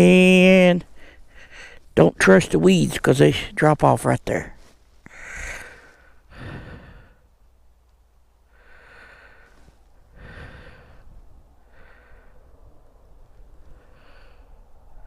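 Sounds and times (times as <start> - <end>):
man breathing: 0.9 - 1.9, 5.0 - 7.5, 8.4 - 15.0.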